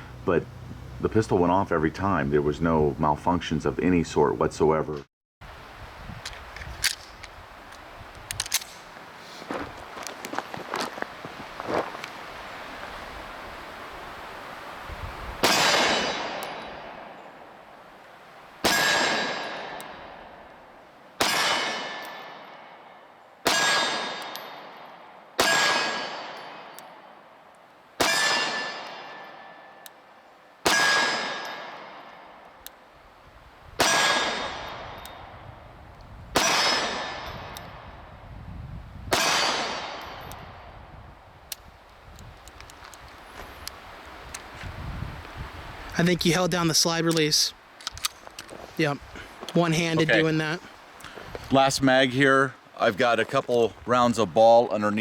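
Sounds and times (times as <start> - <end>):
metallic clang of steel target: 15.4 - 17.0
pistol shots: 15.4 - 17.2, 18.6 - 20.3, 21.2 - 22.8, 23.4 - 24.8, 25.4 - 26.8, 28.0 - 29.6, 30.6 - 32.0, 33.8 - 34.9, 36.4 - 37.3, 39.1 - 40.2.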